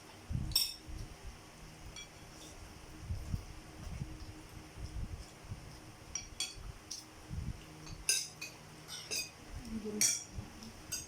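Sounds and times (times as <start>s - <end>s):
cutlery clinking against a plate: 6.1s - 7.0s, 7.8s - 9.4s, 10.0s - 11.0s.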